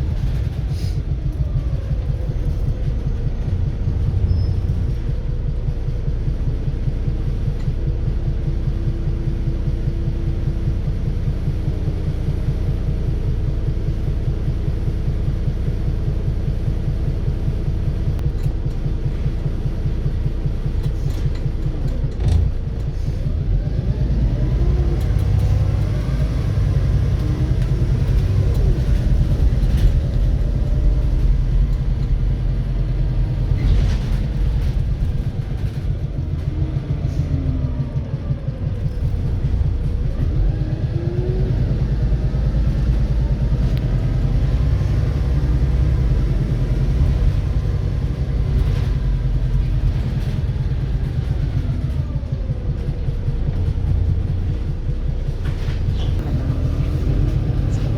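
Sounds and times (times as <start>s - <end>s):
bus diesel engine running: 0.0s - 57.9s.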